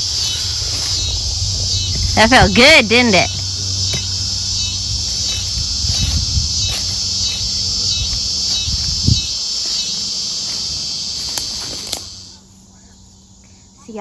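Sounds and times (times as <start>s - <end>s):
low rumble: 0.0s - 9.4s
crickets and insects trilling: 0.0s - 14.0s.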